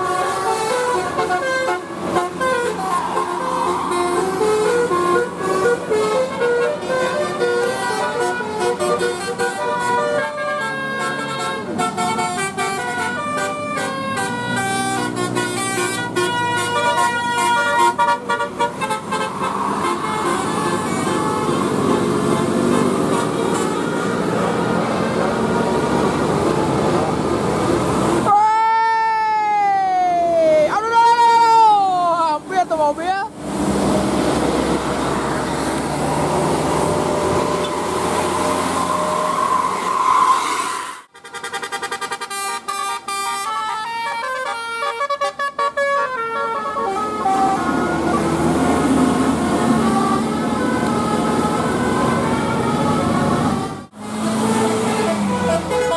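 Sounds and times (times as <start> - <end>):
musical bus horn playing tune: 0.0 - 25.6, 36.9 - 55.9.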